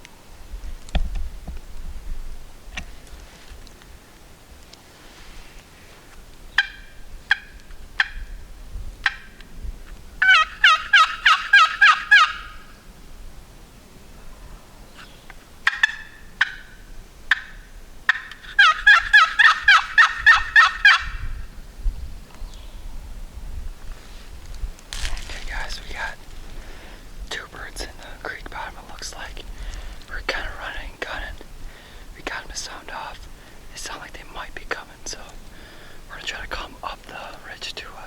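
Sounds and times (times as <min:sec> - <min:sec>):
turkey calling: 0:06.5 - 0:08.3, 0:10.2 - 0:12.8, 0:15.6 - 0:21.3.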